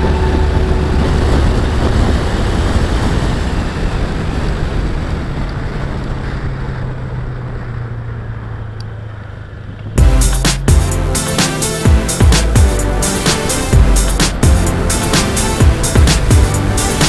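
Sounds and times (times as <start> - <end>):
wind rushing over camera: 0.0 - 10.0
scooter engine hum: 0.0 - 17.0.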